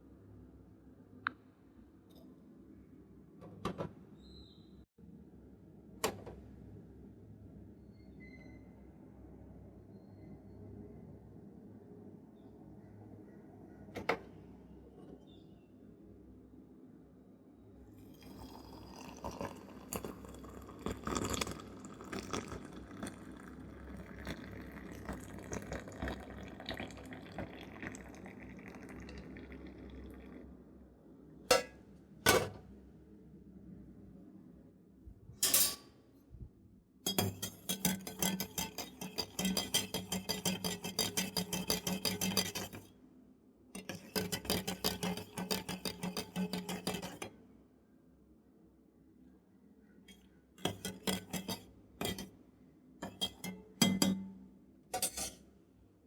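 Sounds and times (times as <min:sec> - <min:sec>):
metal vessels clinking: 0:31.5 - 0:32.6, 0:35.4 - 0:35.9, 0:37.1 - 0:42.9, 0:43.8 - 0:47.3, 0:50.6 - 0:52.3, 0:53.0 - 0:54.4, 0:55.0 - 0:55.4.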